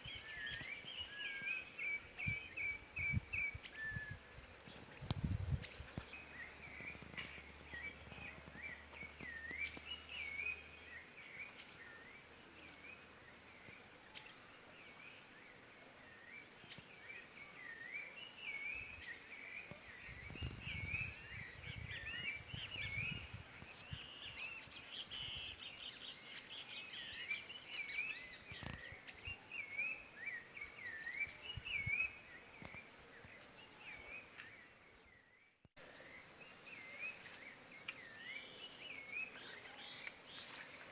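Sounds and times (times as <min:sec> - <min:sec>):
thrush singing whistled notes: 0:00.0 - 0:11.8, 0:17.7 - 0:32.8.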